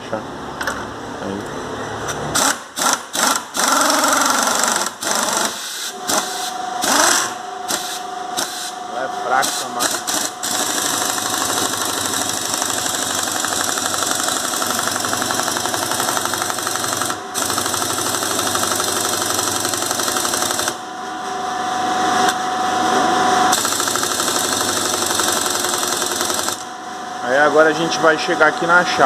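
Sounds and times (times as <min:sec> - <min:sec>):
impact wrench hammering: 0:02.4 - 0:08.7, 0:09.4 - 0:20.8, 0:23.5 - 0:26.6.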